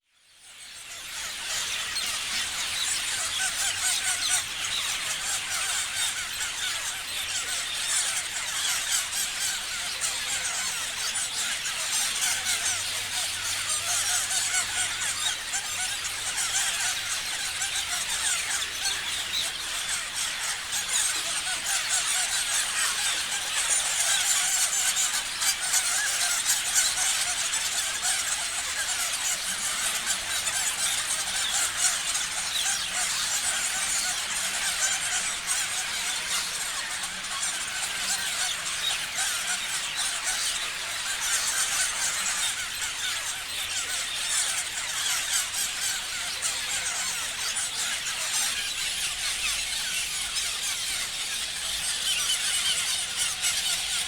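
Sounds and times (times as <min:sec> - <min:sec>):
parrots chirping and screeching: 0:00.4 - 0:54.0.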